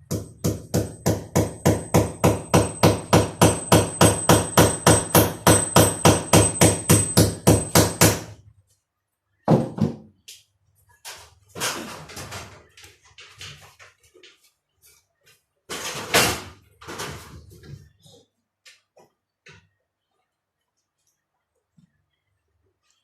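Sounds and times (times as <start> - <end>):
hammer striking: 0.1 - 8.3.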